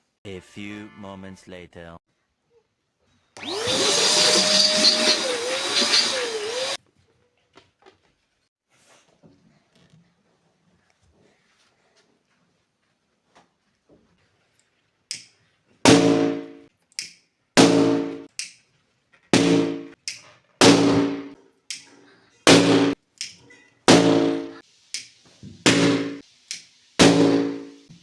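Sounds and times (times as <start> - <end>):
balloons bursting with bangs: 15.8 - 16.6, 17.6 - 18.2, 19.3 - 20.0, 20.6 - 21.4, 22.5 - 23.0, 23.9 - 24.6, 25.6 - 26.2, 27.0 - 28.0
gas lighter click: 24.9 - 25.1.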